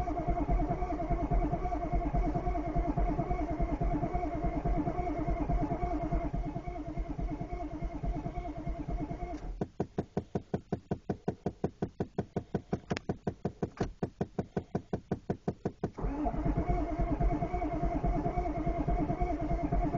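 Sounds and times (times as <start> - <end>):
engine starter whine: 0.0 - 9.6, 16.0 - 19.9
engine cranking knocks: 0.0 - 19.9.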